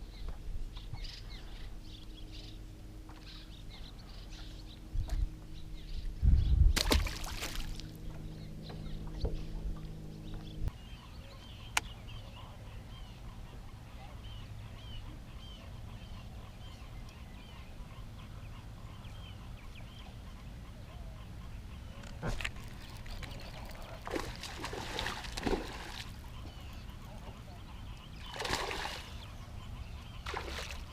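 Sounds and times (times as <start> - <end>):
steady low rumble: 0.0 - 28.2
noisy rustles or splashes: 6.8 - 7.9.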